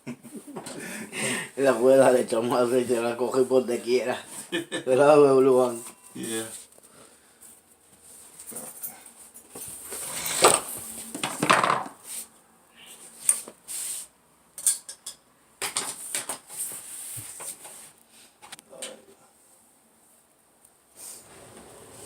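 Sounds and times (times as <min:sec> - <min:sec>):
metal clanks and scrapes: 0:09.9 - 0:10.8.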